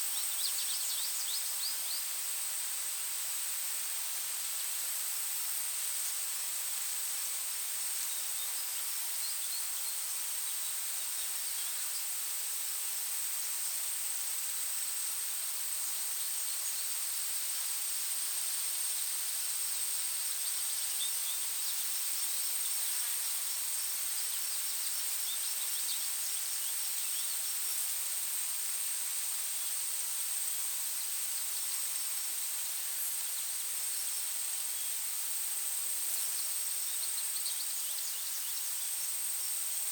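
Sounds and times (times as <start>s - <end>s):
hiss: 0.0s - 39.9s
faint bird chirps: 20.3s - 27.8s, 36.2s - 39.2s.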